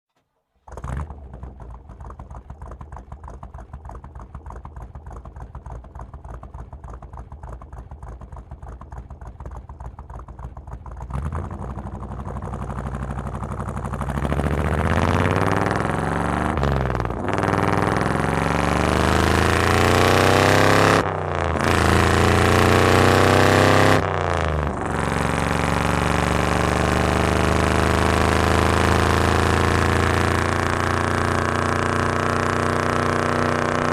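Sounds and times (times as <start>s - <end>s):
hot rod engine idling and revving: 0.6s - 33.9s.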